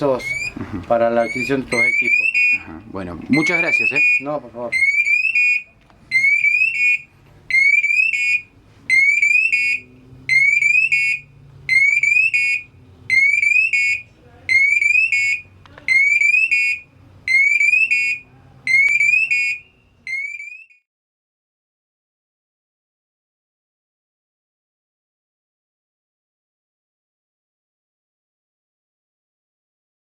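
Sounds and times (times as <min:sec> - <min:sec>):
shrill electronic alarm chirps: 0:00.0 - 0:00.6, 0:01.2 - 0:02.7, 0:03.3 - 0:20.8.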